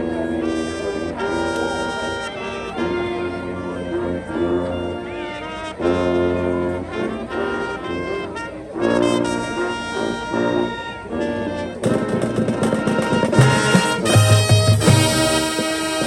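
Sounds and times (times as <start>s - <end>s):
marching band brass: 0.0s - 16.0s
drums: 11.8s - 16.0s.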